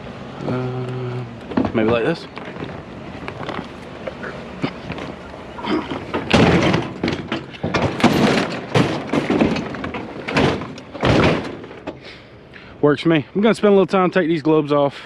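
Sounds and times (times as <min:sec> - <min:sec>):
scrap metal knocking and scraping: 0:01.4 - 0:12.0.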